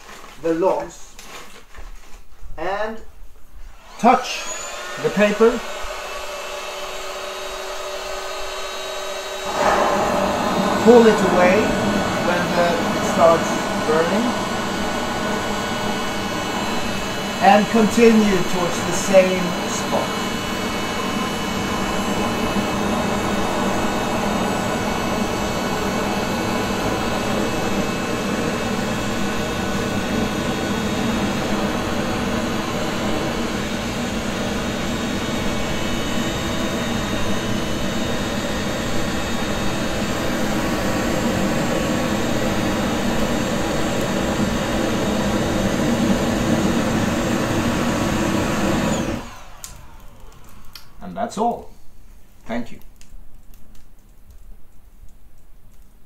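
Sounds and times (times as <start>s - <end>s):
electric fire lighter blowing air: 3.7s - 51.0s
steady tones: 8.6s - 29.1s.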